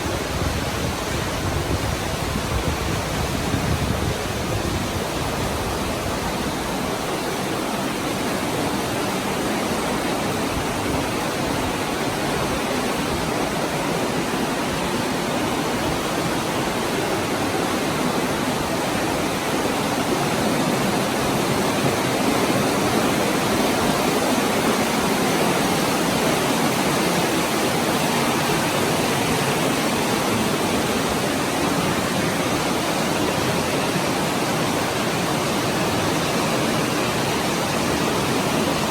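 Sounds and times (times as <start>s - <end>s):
stream flowing in a cave: 0.0s - 38.9s.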